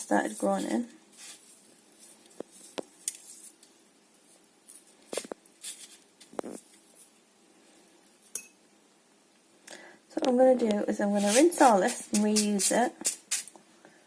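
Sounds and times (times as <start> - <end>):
rustling: 0.0 - 8.4.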